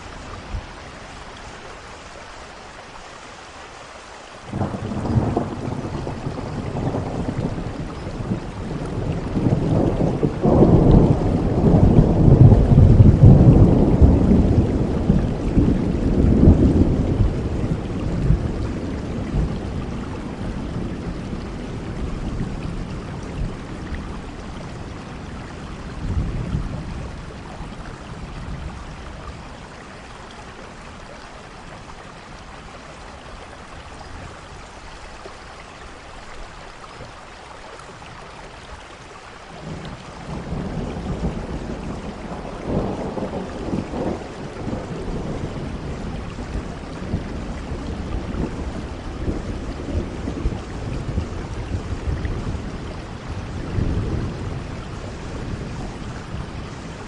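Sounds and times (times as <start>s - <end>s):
steady rain: 0.0s - 57.0s
thunder rolling: 4.5s - 23.6s, 39.6s - 57.0s.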